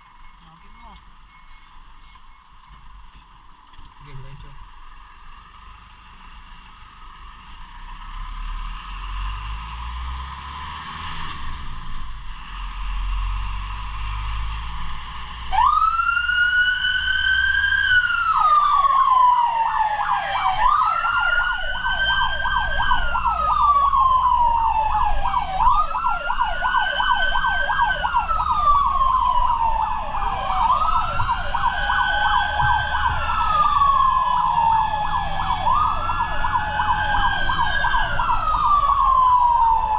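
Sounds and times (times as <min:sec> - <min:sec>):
fire truck engine running: 0:15.5 - 0:39.9
siren wailing: 0:15.5 - 0:39.9
fast warbling siren yelp: 0:15.6 - 0:39.9.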